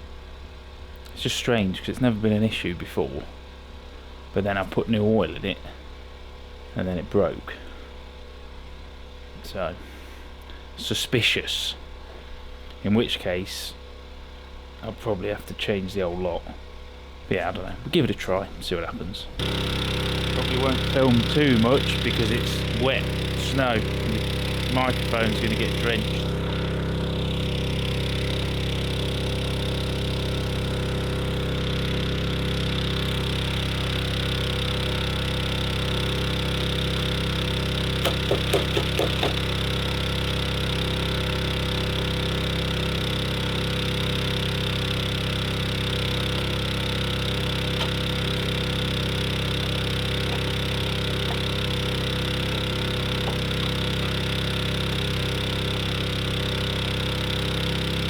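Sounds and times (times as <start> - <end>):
tractor engine running: 19.4 - 58.0
quick sharp sounds: 37.9 - 39.7.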